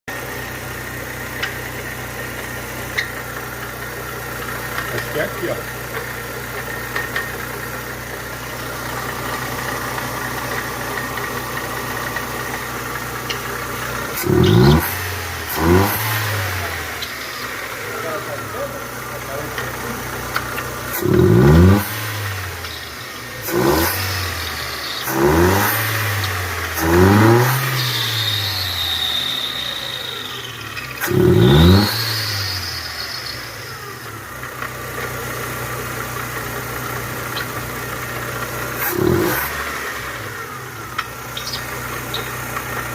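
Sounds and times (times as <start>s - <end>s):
car engine revving: 0.1s - 42.9s.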